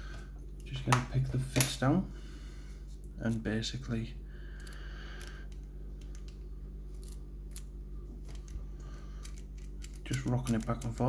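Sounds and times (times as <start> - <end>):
low hum: 0.0 - 11.0
lock pick clicking and scraping: 9.2 - 11.0.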